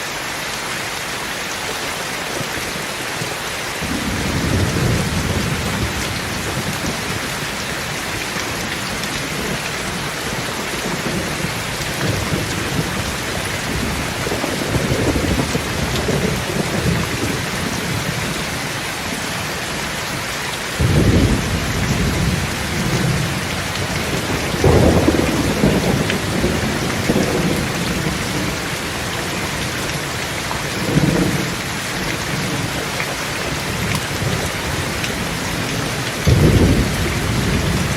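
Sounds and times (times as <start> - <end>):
heavy rain falling: 0.0 - 37.9
low thunder rolling: 3.8 - 18.2, 20.8 - 30.0, 30.7 - 32.8, 33.6 - 37.9.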